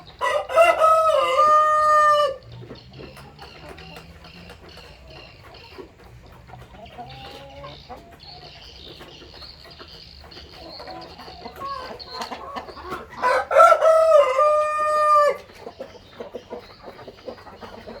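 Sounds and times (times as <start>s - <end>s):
hens clucking softly: 0.0s - 18.0s
rooster crowing: 0.2s - 2.5s, 13.1s - 15.5s.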